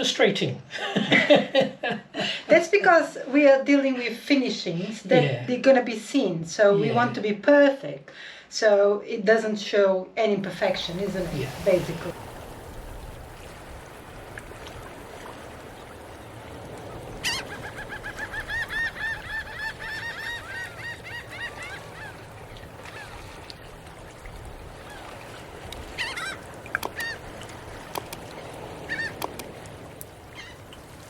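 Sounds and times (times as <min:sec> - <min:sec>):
geese honking: 0:17.2 - 0:23.1, 0:28.8 - 0:29.4.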